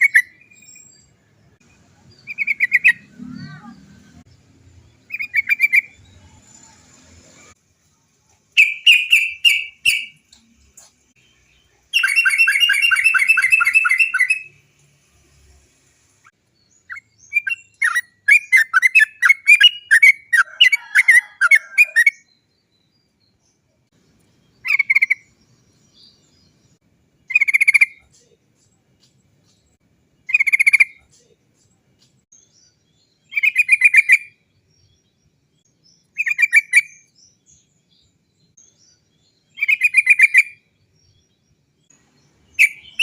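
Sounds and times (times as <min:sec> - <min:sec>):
bulbul singing: 0:00.0 - 0:14.9, 0:16.2 - 0:43.0.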